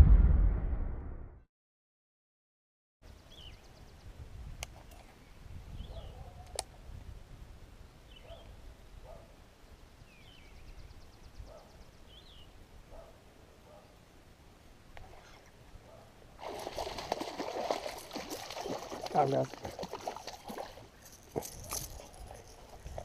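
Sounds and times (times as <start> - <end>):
wind rumble on microphone: 3.8 - 9.3, 21.4 - 23.0.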